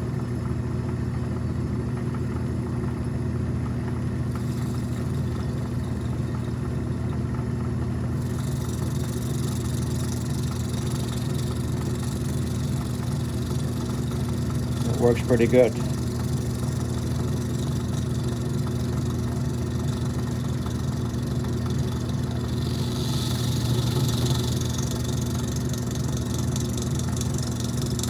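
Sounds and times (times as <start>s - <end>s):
lathe motor humming: 0.0s - 28.0s
high hiss of cutting: 22.3s - 25.4s.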